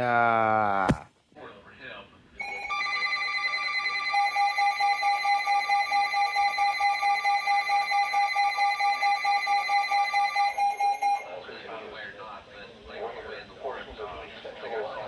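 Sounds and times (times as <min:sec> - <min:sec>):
two-pitch alert tone: 0:02.4 - 0:11.2.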